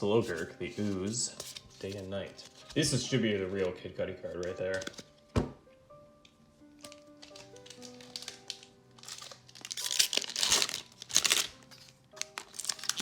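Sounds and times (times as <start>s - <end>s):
quiet background music: 0.0s - 13.0s
foil wrapper crinkling and tearing: 6.8s - 13.0s.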